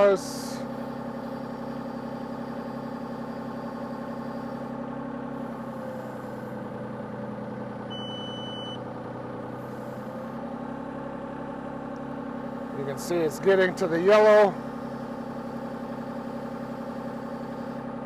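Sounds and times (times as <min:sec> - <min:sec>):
excavator engine running: 0:00.0 - 0:18.0
short high electronic beep: 0:07.9 - 0:08.8.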